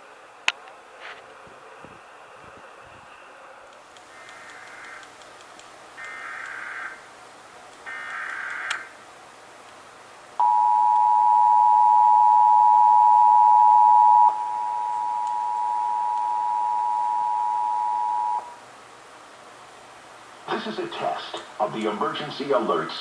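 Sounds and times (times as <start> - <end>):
loud dual tone alert: 10.4 - 18.6.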